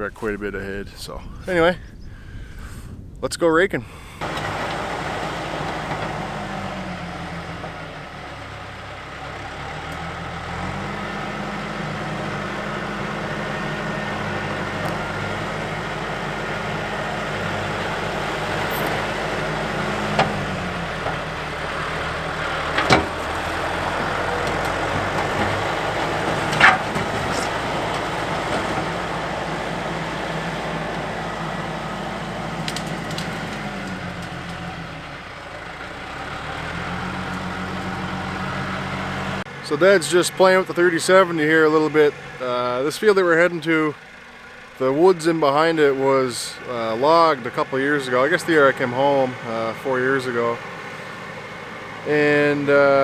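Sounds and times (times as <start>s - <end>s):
tractor engine running: 0.0s - 1.8s, 3.6s - 53.0s
sharp knocks and rattles: 10.7s - 34.8s.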